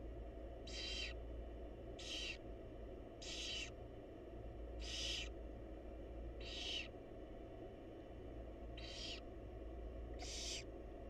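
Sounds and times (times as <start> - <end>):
steady low hum: 0.0 - 11.0
owls screeching: 0.6 - 1.2, 2.0 - 2.4, 3.2 - 3.8, 4.8 - 5.3, 6.4 - 6.9, 8.8 - 9.3, 10.2 - 10.7.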